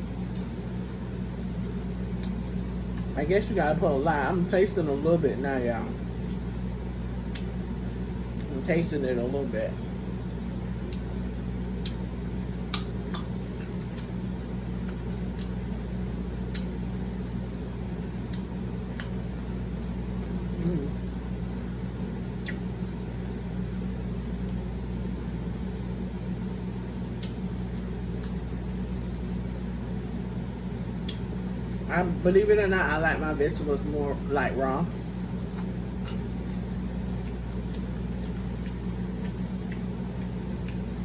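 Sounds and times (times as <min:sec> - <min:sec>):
low electrical hum: 0:00.0 - 0:41.0
person chewing food: 0:00.2 - 0:03.2, 0:10.0 - 0:17.0, 0:18.0 - 0:21.6, 0:27.1 - 0:31.9, 0:34.9 - 0:41.0
mouth clicks and smacks: 0:07.3 - 0:07.6, 0:16.5 - 0:16.8, 0:22.4 - 0:22.7.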